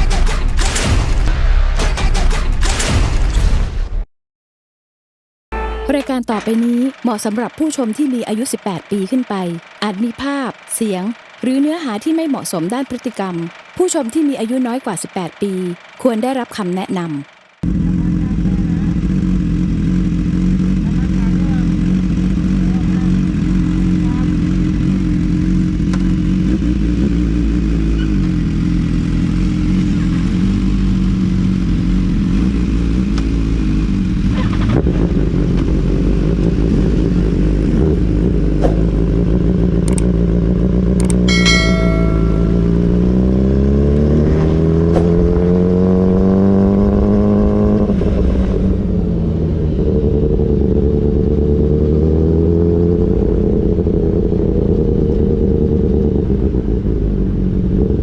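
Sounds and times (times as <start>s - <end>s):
motorcycle engine idling and revving: 6.2s - 58.0s
brief high-pitched tone: 41.2s - 43.2s.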